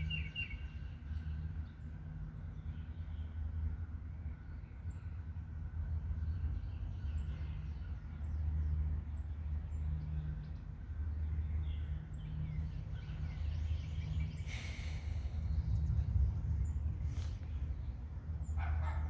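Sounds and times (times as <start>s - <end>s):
small birds chirping: 4.2s - 19.0s
low rumble: 12.6s - 18.6s.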